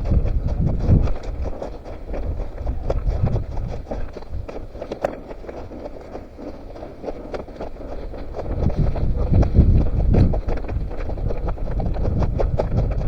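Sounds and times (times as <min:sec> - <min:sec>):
running footsteps on forest floor: 0:00.0 - 0:13.0.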